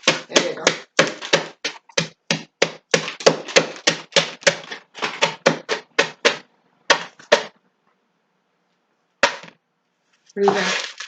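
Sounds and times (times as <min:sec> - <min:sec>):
cup pounding dry seed in a bowl: 0:00.0 - 0:07.6, 0:10.4 - 0:11.0.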